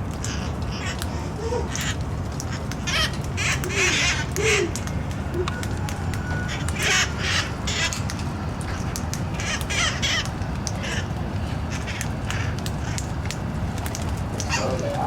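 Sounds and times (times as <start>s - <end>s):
parrots squawking: 0.2s - 5.6s, 6.2s - 8.1s, 8.7s - 13.0s, 14.4s - 15.0s.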